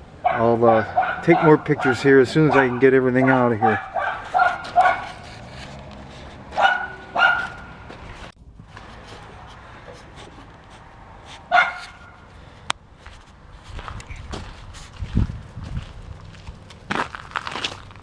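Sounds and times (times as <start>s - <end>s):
dog barking: 0.1s - 8.0s, 11.5s - 12.3s.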